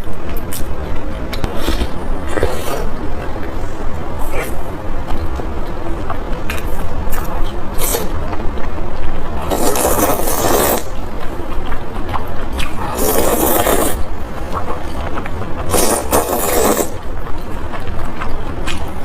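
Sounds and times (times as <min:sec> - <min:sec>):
noodles slurped: 0:09.4 - 0:11.0, 0:12.5 - 0:14.7, 0:15.7 - 0:17.0.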